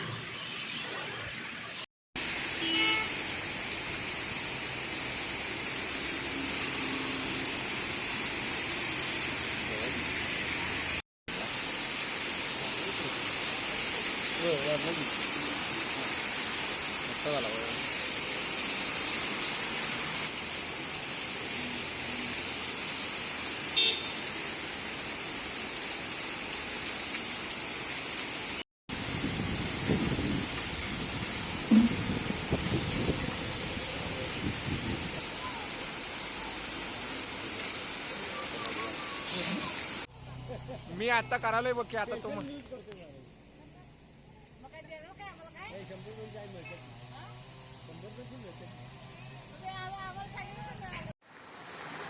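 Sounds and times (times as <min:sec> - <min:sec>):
heavy rain pouring: 0:02.2 - 0:42.6.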